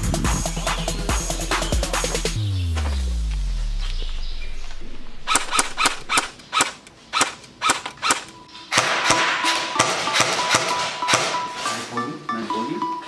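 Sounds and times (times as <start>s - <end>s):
airsoft guns firing: 5.2s - 11.4s.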